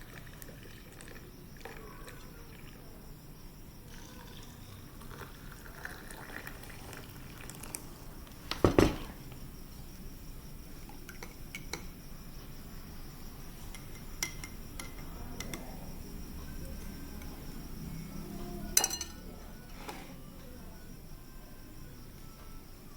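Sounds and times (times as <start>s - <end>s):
utensils clinking against dishes: 18.8s - 19.9s.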